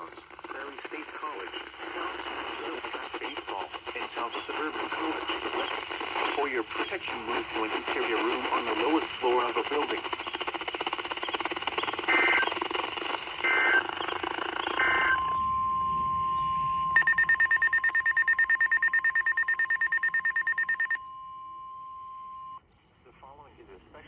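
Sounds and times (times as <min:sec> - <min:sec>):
rapid alarm beeping: 0:17.0 - 0:21.0
steady warning alarm tone: 0:17.0 - 0:21.0.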